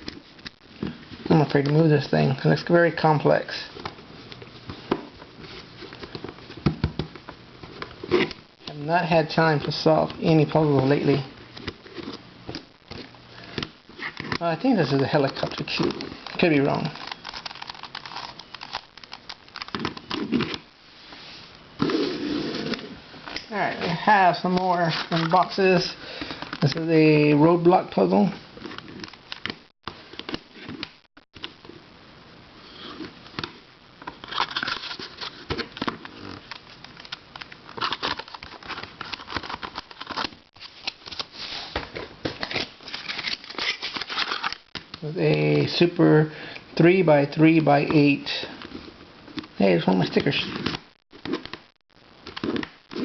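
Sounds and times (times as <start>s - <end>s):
packaging crinkling: 14.0s - 20.6s, 24.1s - 26.8s, 34.0s - 44.8s.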